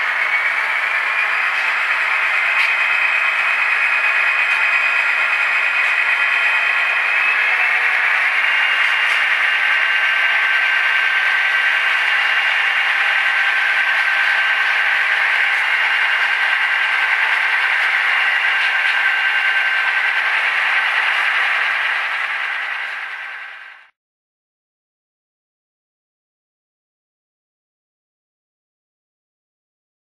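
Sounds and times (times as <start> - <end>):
tinny diesel locomotive sounds: 0.0 - 23.9.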